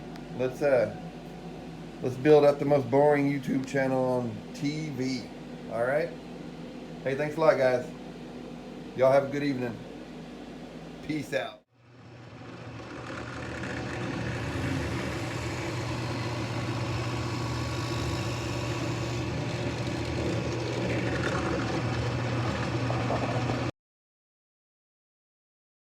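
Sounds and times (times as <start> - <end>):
motor humming: 11.8 - 23.7.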